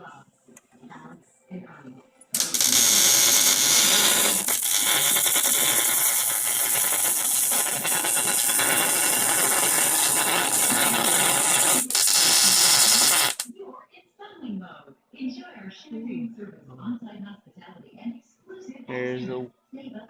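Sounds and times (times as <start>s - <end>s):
arc welding crackling hiss: 2.4s - 13.5s.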